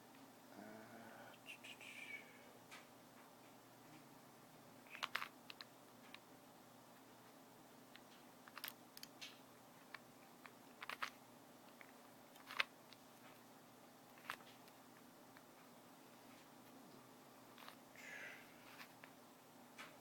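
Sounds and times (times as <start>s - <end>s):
puzzle cube clicking: 4.9s - 6.2s, 7.9s - 13.0s, 14.1s - 15.5s, 17.5s - 17.8s.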